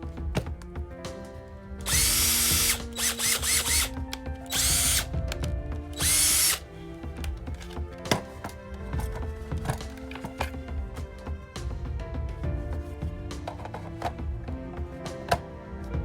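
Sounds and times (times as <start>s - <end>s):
background music: 0.0s - 16.0s
power tool motor bursts: 1.8s - 5.1s, 6.0s - 6.6s.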